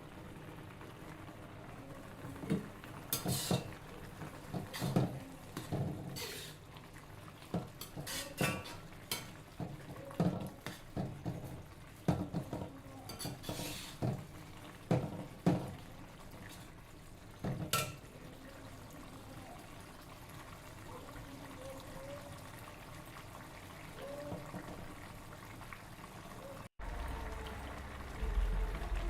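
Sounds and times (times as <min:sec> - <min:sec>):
utensils clinking against dishes: 0:03.2 - 0:03.8, 0:07.8 - 0:09.3, 0:13.1 - 0:14.0.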